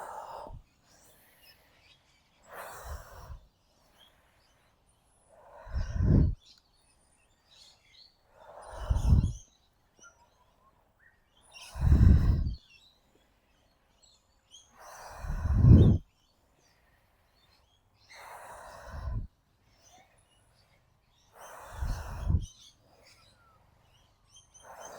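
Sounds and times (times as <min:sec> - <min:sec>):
woman breathing forcefully: 0:00.0 - 0:00.6, 0:02.5 - 0:03.4, 0:05.4 - 0:06.4, 0:08.4 - 0:09.4, 0:11.7 - 0:12.6, 0:14.8 - 0:16.0, 0:18.1 - 0:19.3, 0:21.4 - 0:22.5, 0:24.6 - 0:24.9
faint bird chirps: 0:00.0 - 0:24.9.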